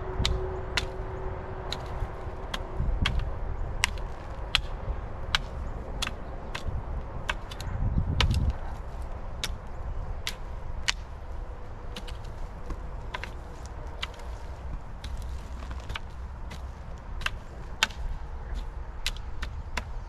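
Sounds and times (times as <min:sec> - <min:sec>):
low rumble: 0:00.0 - 0:20.0
metal rake scraping soil: 0:10.5 - 0:17.0.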